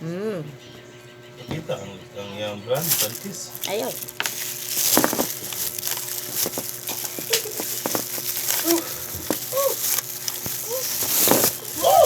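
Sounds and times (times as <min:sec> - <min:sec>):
food and packaging crunching: 0:02.8 - 0:12.0.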